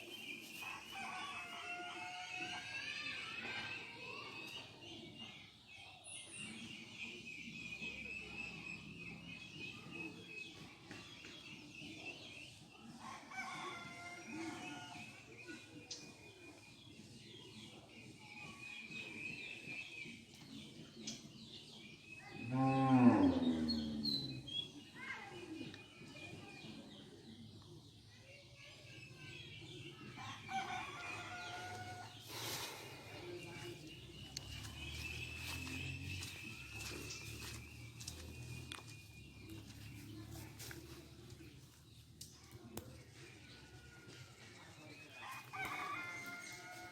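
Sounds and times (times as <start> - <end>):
birds chirping: 15.6 - 26.4, 29.0 - 46.9
rooster crowing: 45.5 - 46.9.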